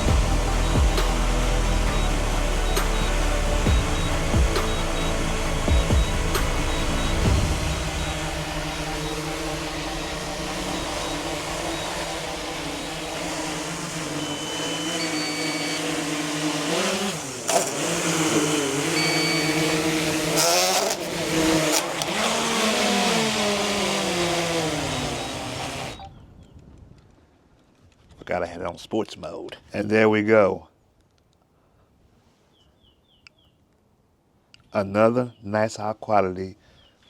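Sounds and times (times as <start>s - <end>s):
short beeps: 0.0s - 16.0s, 18.9s - 19.7s
drone propellers whirring: 0.0s - 26.1s.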